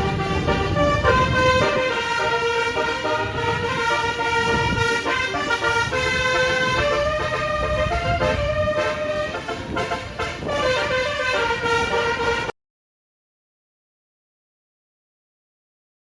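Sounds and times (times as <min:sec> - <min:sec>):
engine and road noise: 0:00.0 - 0:12.5
multi-tone bus horn tune: 0:00.0 - 0:12.5.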